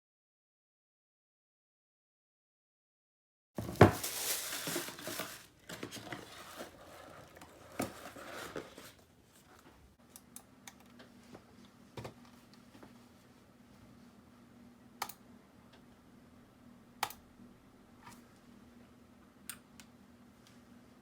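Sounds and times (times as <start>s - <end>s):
packaging crinkling and rustling: 3.6s - 9.1s.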